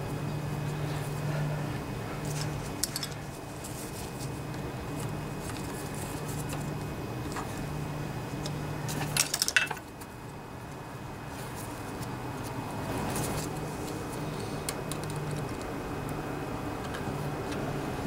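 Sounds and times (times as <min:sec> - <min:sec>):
low steady hum: 0:00.0 - 0:18.0
hands fitting engine parts clicking: 0:14.6 - 0:16.2.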